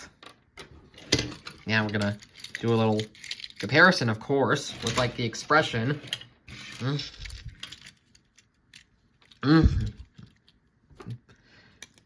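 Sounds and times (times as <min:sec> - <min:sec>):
toy cars clicking and tapping: 0:01.4 - 0:04.0, 0:06.0 - 0:09.4
person humming: 0:09.4 - 0:10.1.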